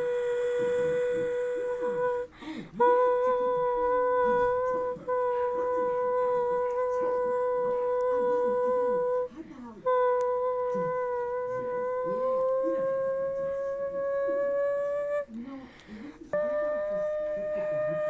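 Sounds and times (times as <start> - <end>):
steady pitched tone: 0.0 - 15.4, 16.2 - 18.0.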